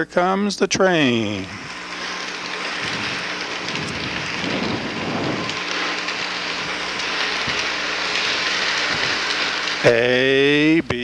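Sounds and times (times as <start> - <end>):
faint hum: 0.0 - 11.0
model train rattling whir: 0.0 - 11.0.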